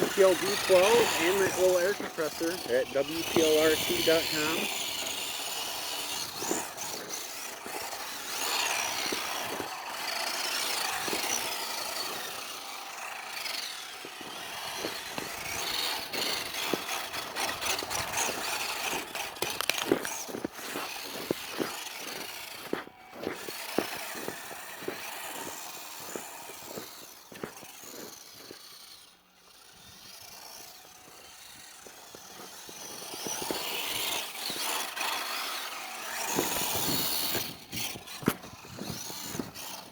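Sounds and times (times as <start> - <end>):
electric motor whining: 0.0 - 39.9
short clicks and ticks: 19.4 - 20.2.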